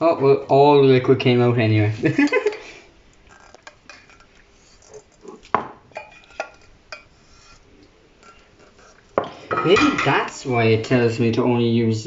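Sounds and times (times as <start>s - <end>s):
spatula scraping cookware: 3.3s - 10.4s.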